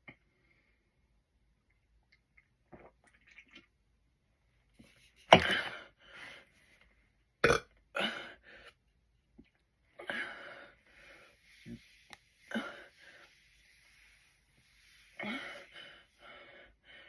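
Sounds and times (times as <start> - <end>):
person burping: 7.4 - 8.2.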